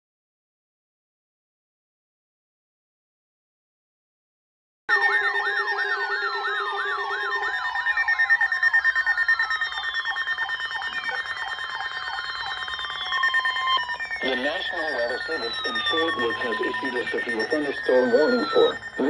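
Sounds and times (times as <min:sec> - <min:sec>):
electronic siren yelp warbling: 0:04.9 - 0:19.0
slow falling siren sweeps: 0:04.9 - 0:19.0
steady high alarm tone: 0:04.9 - 0:19.0.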